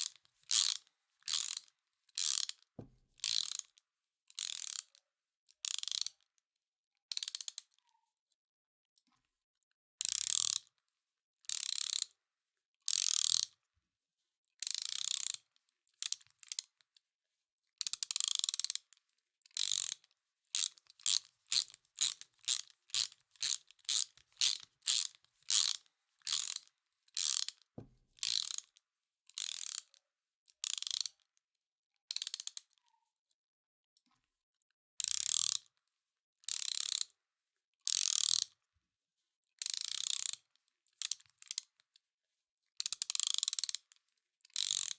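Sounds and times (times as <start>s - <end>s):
ratchet wrench clicking: 0.0s - 1.6s, 2.2s - 2.6s, 3.2s - 3.7s, 4.4s - 4.9s, 5.7s - 6.1s, 10.1s - 10.6s, 12.9s - 13.4s, 14.6s - 15.4s, 18.0s - 18.8s, 19.6s - 20.0s, 20.6s - 27.6s, 28.2s - 28.7s, 29.4s - 29.8s, 30.6s - 31.1s, 35.1s - 35.6s, 36.6s - 37.0s, 37.9s - 38.4s, 39.7s - 40.4s, 42.9s - 43.8s, 44.6s - 44.9s.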